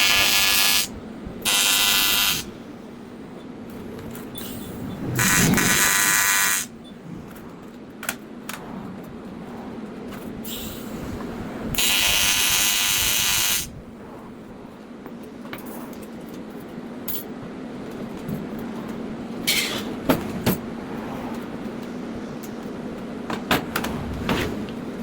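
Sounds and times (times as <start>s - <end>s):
welding arc buzzing: 0.0s - 2.5s, 5.2s - 6.8s, 11.7s - 13.7s
low hum: 2.5s - 10.4s.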